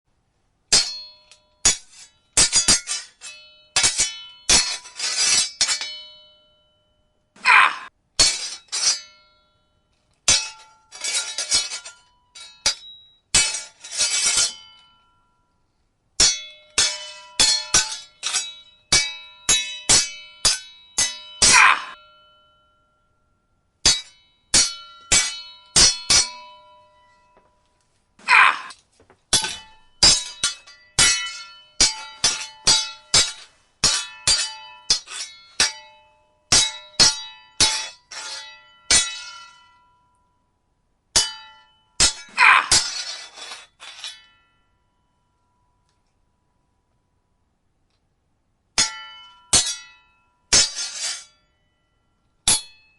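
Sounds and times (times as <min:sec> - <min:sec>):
metal blades clashing: 0:00.7 - 0:06.5, 0:07.4 - 0:09.4, 0:10.3 - 0:15.0, 0:16.2 - 0:22.3, 0:23.8 - 0:27.4, 0:28.2 - 0:39.8, 0:41.2 - 0:44.4, 0:48.8 - 0:51.4, 0:52.5 - 0:52.8.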